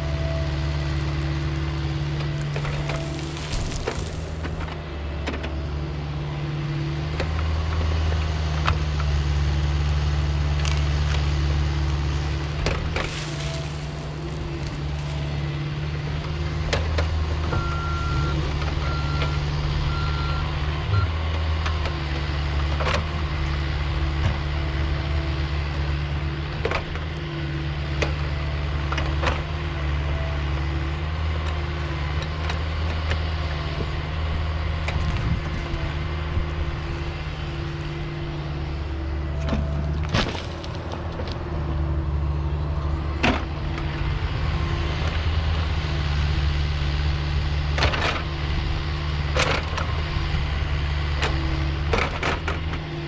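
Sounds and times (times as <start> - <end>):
diesel engine running: 0.0 - 53.0.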